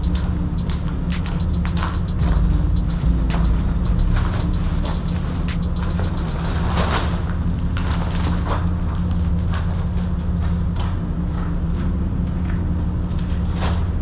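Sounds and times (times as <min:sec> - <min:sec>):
car engine running: 0:00.0 - 0:07.1.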